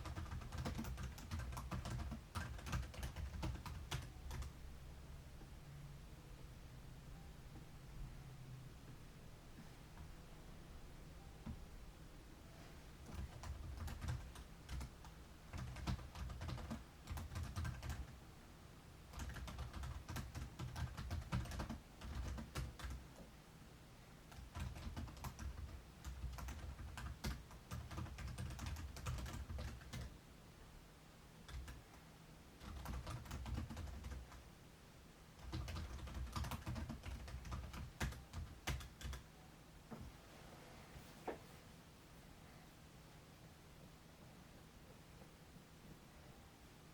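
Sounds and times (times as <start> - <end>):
rapid irregular clicks and taps: 0.0 - 4.5, 13.0 - 18.2, 19.1 - 23.3, 24.2 - 30.1, 31.4 - 34.4, 35.4 - 39.3.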